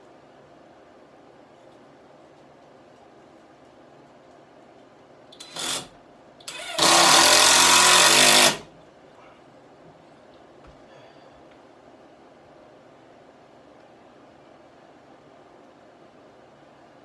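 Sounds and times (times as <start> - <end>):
power drill drilling into wood: 5.4 - 5.9, 6.5 - 8.7.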